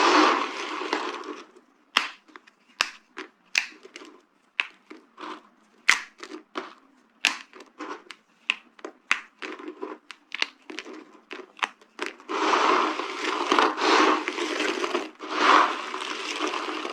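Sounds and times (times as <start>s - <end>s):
dry soap cracking and crunching: 0.9s - 12.4s.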